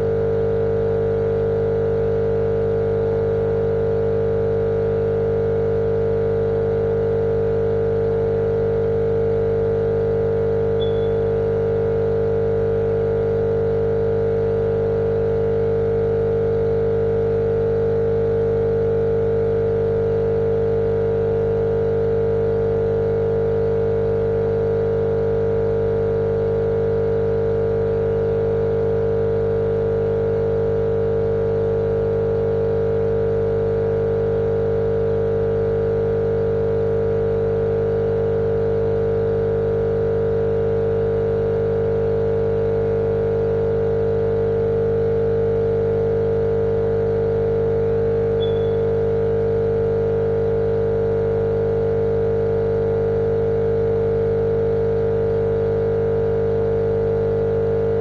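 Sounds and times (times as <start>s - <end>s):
steady machine-like hum: 10.8s - 11.8s, 48.2s - 49.0s.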